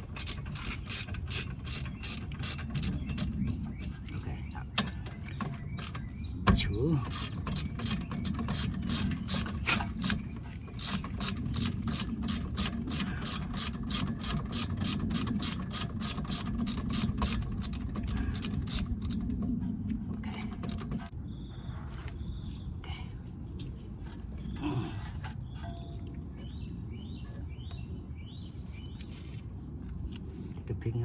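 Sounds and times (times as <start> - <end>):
ratchet wrench clicking: 0.0 - 3.3, 7.1 - 10.2, 10.8 - 19.2, 20.4 - 21.1.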